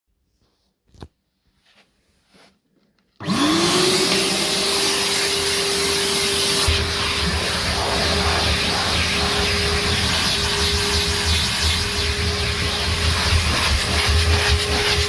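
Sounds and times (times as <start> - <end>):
vacuum cleaner motor whine: 3.2 - 15.0.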